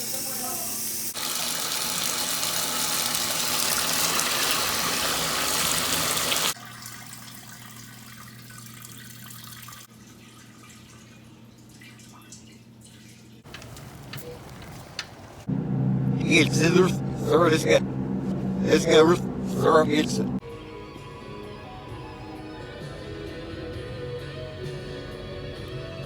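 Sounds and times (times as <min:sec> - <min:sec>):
water rushing from pipe: 0:01.1 - 0:09.9.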